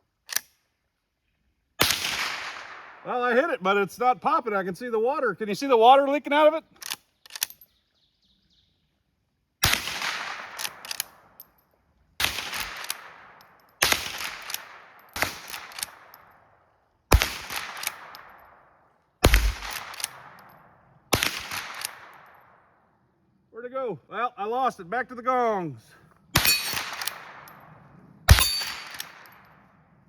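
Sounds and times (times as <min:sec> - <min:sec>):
rifle shots echoing: 0:01.8 - 0:03.1, 0:09.6 - 0:11.4, 0:12.2 - 0:16.4, 0:17.1 - 0:22.7, 0:26.4 - 0:29.8
rifle lever clicks and knocks: 0:06.8 - 0:07.7, 0:10.6 - 0:11.6.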